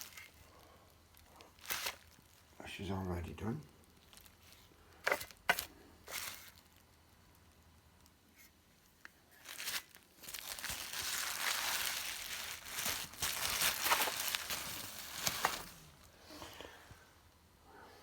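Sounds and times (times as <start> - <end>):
scratchy rustling and crinkling: 0.0 - 0.5, 1.1 - 2.5, 4.0 - 6.8, 9.3 - 16.6.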